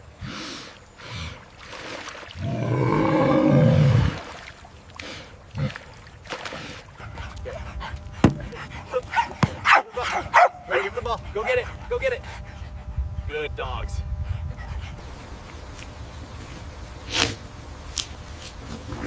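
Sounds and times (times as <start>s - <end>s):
large animal low call: 2.4s - 4.2s.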